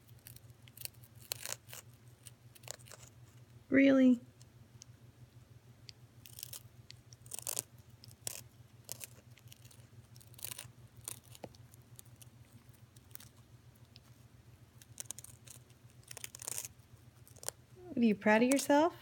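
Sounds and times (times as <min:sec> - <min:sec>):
bird crunching on corn snack: 0:00.0 - 0:03.5, 0:05.9 - 0:17.8
low steady hum: 0:00.0 - 0:19.0.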